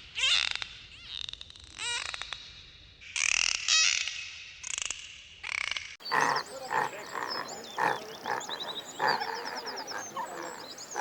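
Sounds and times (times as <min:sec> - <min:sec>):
animal calls: 0:06.0 - 0:11.0
birds chirping: 0:06.0 - 0:11.0
croaking or grunting calls: 0:06.0 - 0:11.0.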